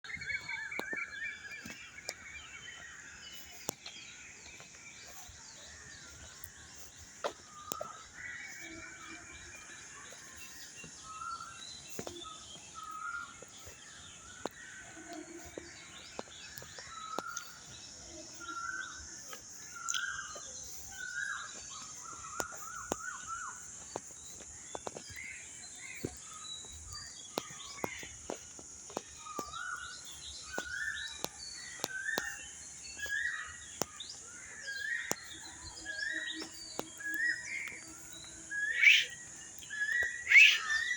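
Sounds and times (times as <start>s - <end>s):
birds chirping and calling: 0.0s - 40.9s.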